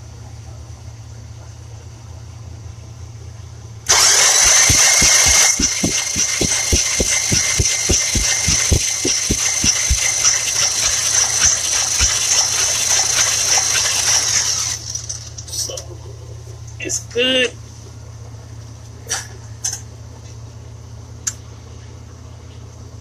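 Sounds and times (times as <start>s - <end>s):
starter motor cranking engine: 3.9s - 15.1s.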